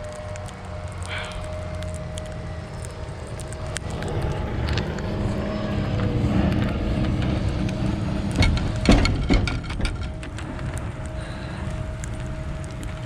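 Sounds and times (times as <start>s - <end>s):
low engine rumble: 0.0s - 13.0s
sharp clicks and knocks: 6.0s - 11.2s.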